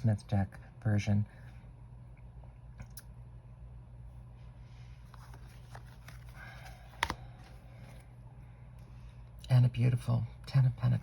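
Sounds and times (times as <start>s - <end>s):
cards rustling and sliding: 4.8s - 8.2s.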